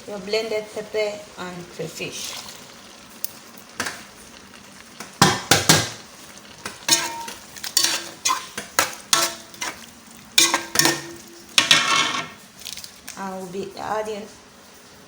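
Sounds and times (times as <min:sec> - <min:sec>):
spoon scraping in a pot: 0:06.6 - 0:12.4.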